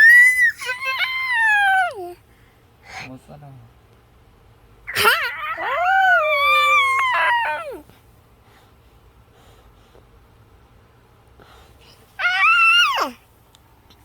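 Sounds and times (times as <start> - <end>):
pet whining: 0.0 - 2.2, 4.9 - 7.9, 12.2 - 13.2.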